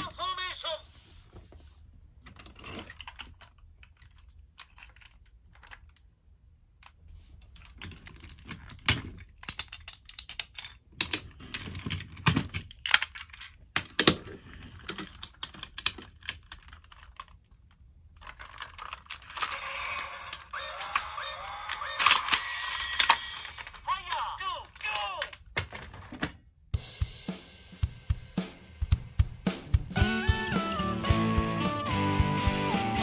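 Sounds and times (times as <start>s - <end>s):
plastic toy parts clicking: 2.2s - 26.4s.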